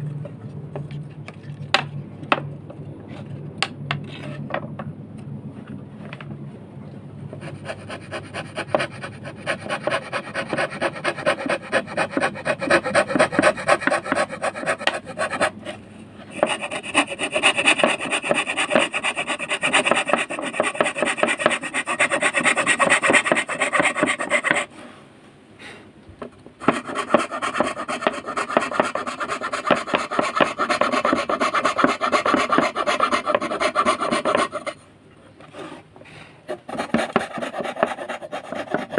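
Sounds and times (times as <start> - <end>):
hand tool rasping through wood: 7.6 - 15.6, 16.3 - 24.7, 26.6 - 34.8, 36.5 - 38.9.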